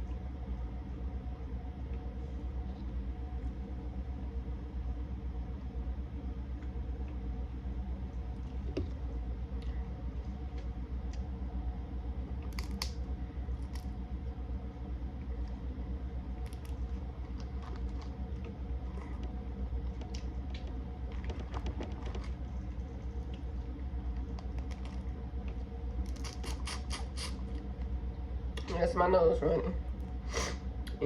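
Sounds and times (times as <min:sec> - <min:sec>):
steady low hum: 0:00.0 - 0:31.0
cracking and peeling shells: 0:12.4 - 0:14.0, 0:16.4 - 0:23.5, 0:24.1 - 0:27.9
person chewing: 0:26.0 - 0:27.7.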